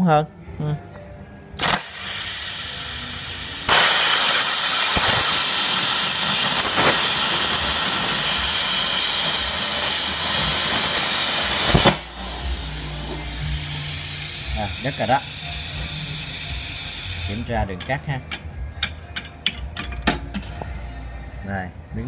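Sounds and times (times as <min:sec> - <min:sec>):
plasma cutter hissing: 0:01.6 - 0:17.5.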